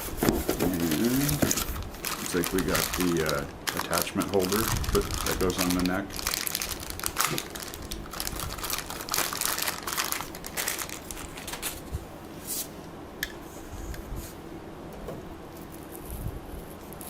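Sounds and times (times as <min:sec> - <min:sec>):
packaging crinkling and rustling: 0:00.1 - 0:12.1.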